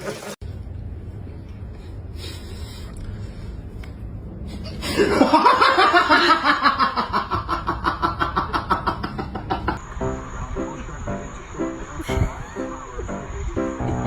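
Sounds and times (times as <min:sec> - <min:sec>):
person laughing hard: 0:04.7 - 0:09.8, 0:12.0 - 0:12.8.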